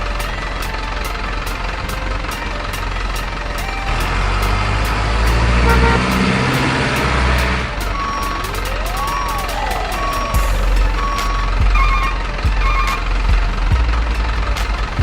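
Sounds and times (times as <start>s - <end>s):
simulated truck engine revving: 0.0s - 15.0s
short electronic beeps: 7.0s - 13.1s.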